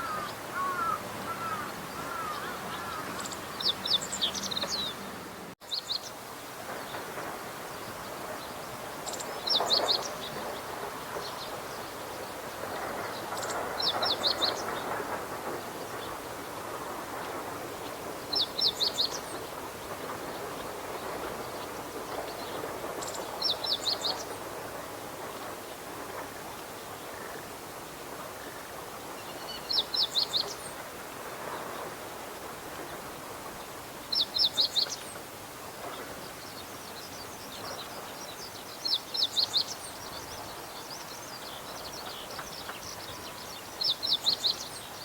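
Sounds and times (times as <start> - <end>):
bird singing: 0.0 - 6.2, 34.1 - 35.2, 35.9 - 45.0.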